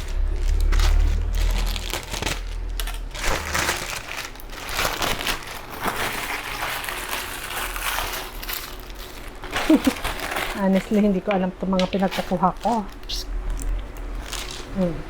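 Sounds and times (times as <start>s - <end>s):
low rumble: 0.0s - 4.8s
plastic packaging crinkling: 0.0s - 15.0s.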